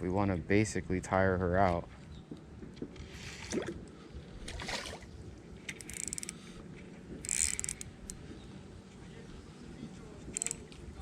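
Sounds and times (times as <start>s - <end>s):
fishing reel clicking: 5.7s - 6.4s, 7.2s - 7.9s, 10.4s - 10.7s.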